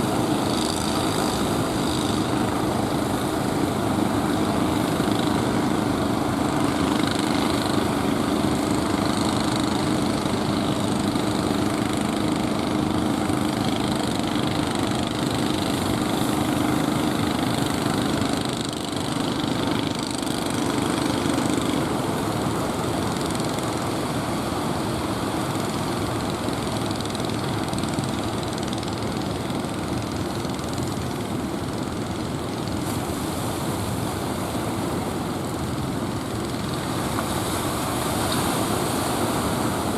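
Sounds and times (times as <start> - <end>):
engine running: 0.0 - 39.9
surf rushing: 31.2 - 39.9.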